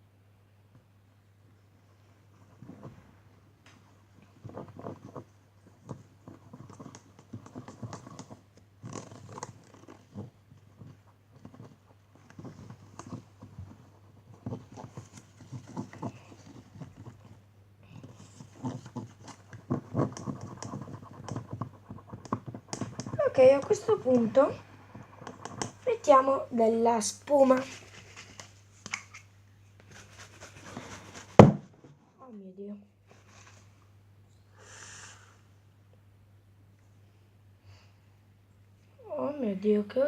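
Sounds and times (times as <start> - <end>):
spoon stirring sticky slime: 17.9 - 26.5.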